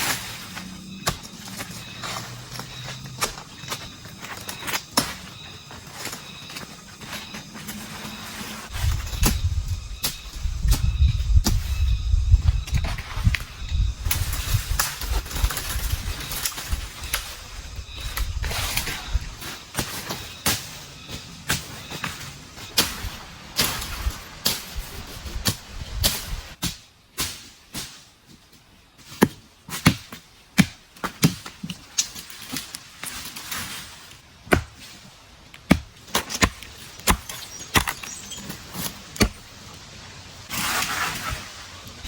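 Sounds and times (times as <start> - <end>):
bamboo being chopped: 29.0 - 32.8, 34.4 - 39.5.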